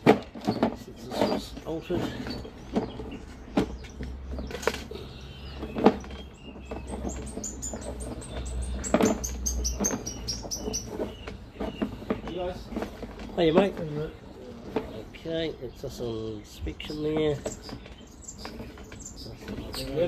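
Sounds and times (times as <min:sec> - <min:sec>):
high chirps: 0:05.0 - 0:11.3.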